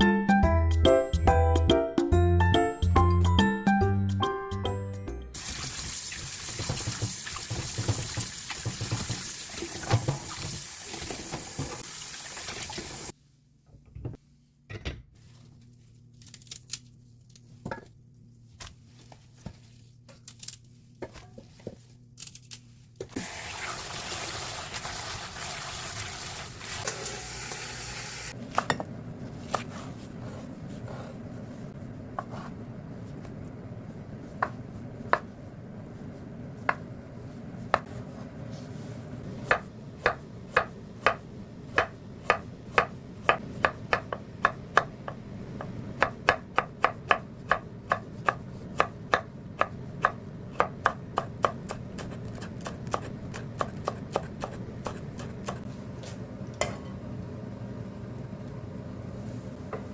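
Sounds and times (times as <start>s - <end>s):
tap running: 5.8s - 13.0s
knife chopping on cutting board: 39.4s - 44.9s, 45.6s - 55.6s.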